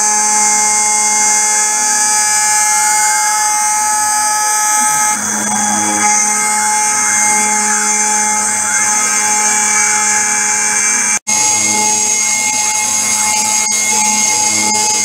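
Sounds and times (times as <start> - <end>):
axis motors whining: 0.0 - 15.0
milling spindle whine: 0.0 - 15.0.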